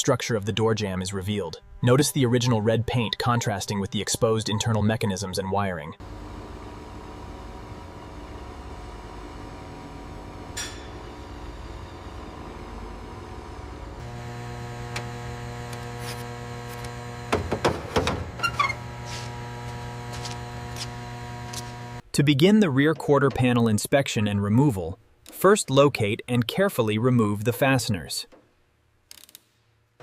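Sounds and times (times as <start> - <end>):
electrical hum: 0.2 - 23.7.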